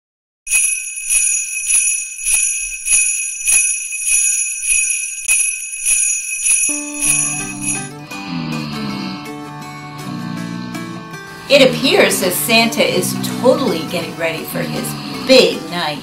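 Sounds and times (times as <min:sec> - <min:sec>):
jingle bells shaken: 0:00.5 - 0:08.0
music: 0:06.7 - 0:16.0.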